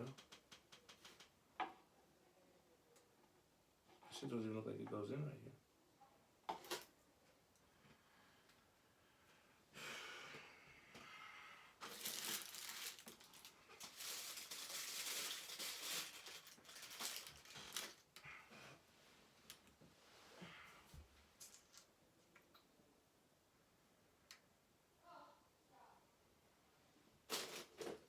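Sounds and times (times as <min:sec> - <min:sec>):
packaging crinkling and rustling: 0:11.8 - 0:18.2, 0:27.3 - 0:28.0.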